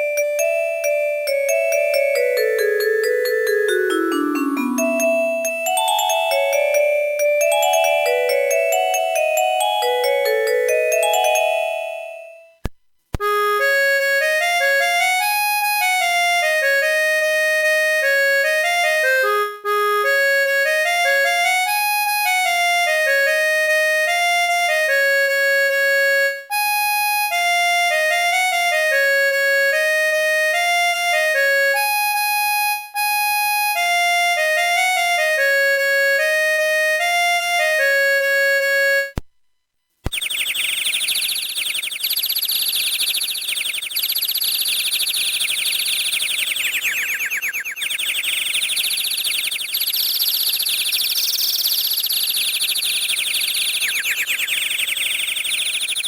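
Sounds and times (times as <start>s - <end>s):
midi ringtone melody: 0.0s - 12.6s.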